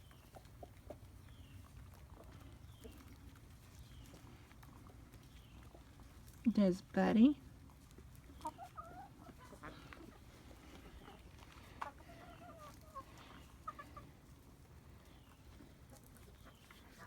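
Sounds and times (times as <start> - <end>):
chickens clucking: 0.0 - 6.7, 7.5 - 17.0.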